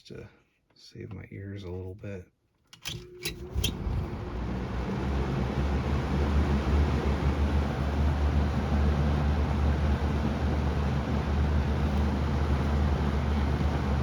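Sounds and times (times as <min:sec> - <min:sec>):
box fan running: 0:02.8 - 0:14.0.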